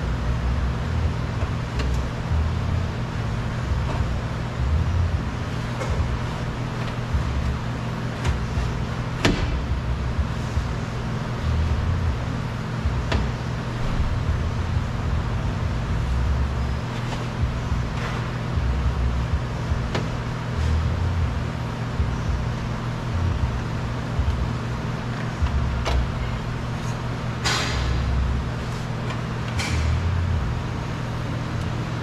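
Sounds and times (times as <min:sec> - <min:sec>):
steady low rumble: 0:00.0 - 0:32.0
clicks and knocks of car parts: 0:05.6 - 0:09.7, 0:12.8 - 0:14.0, 0:19.8 - 0:20.3, 0:25.1 - 0:26.3, 0:27.4 - 0:28.1, 0:29.0 - 0:30.0.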